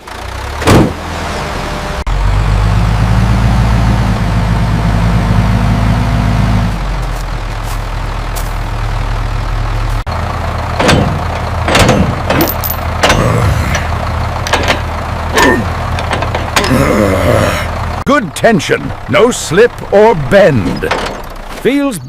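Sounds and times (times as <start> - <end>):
heavy machine engine running: 0.0 - 22.0
sharp knocks: 10.8 - 13.2.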